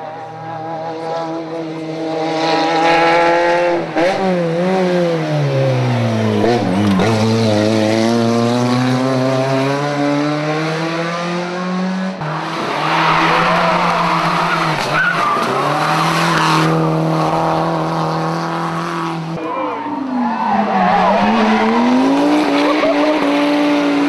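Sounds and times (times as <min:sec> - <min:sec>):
rally car engine revving: 0:00.0 - 0:24.0.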